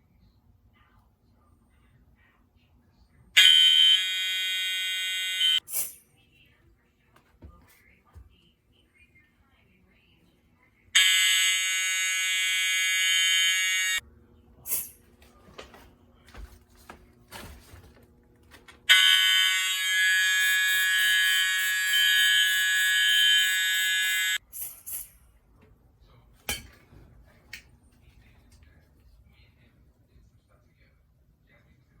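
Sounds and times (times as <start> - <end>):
fire alarm horn: 3.4 - 5.9, 11.0 - 14.0, 18.9 - 24.4.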